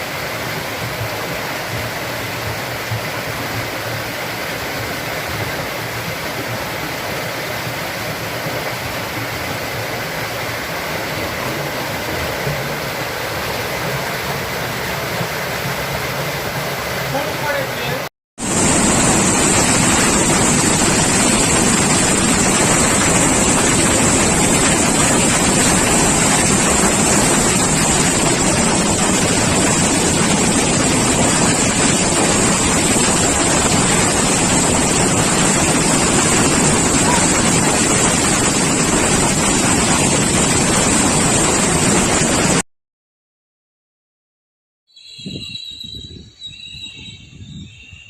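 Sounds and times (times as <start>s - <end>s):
floodwater rushing: 0.0s - 42.6s.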